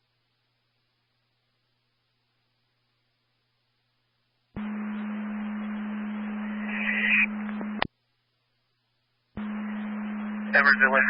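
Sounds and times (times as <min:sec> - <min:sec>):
steady low hum: 0:00.0 - 0:11.0
radio static hiss: 0:04.6 - 0:07.9, 0:09.4 - 0:11.0
radio squelch click: 0:06.7 - 0:07.9.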